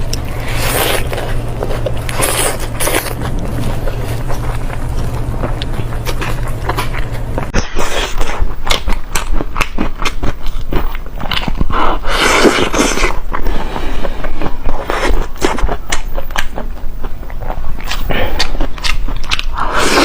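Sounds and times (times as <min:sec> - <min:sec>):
low hum: 0:00.0 - 0:12.1
chewing food close-up: 0:00.0 - 0:20.0.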